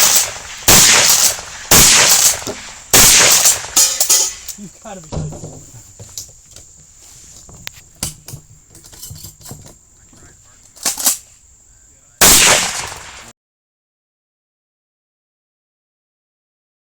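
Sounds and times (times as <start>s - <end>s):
shotgun shot: 0.0s - 4.6s, 12.2s - 13.3s
low murmuring voices: 8.5s - 12.2s.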